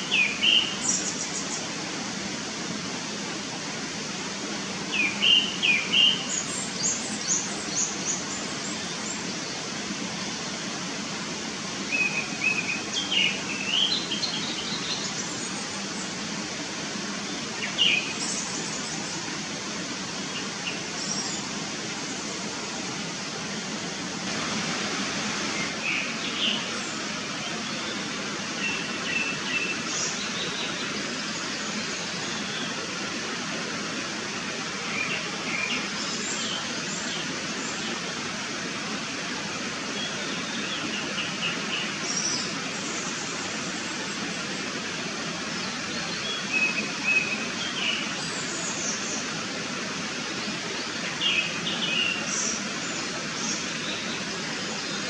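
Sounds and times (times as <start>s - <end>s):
background hiss: 0.0s - 55.0s
thrush whistled song: 5.0s - 7.9s.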